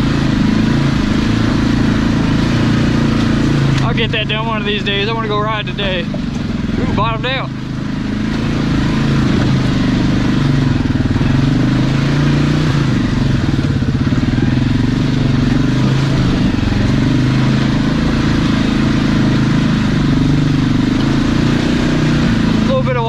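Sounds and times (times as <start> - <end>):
single-cylinder engine running: 0.0 - 23.0.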